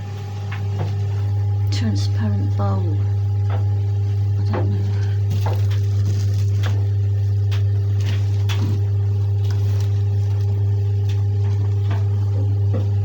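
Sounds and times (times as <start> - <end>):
loud low hum: 0.0 - 13.0
knocks and clicks of items handled: 11.0 - 13.0.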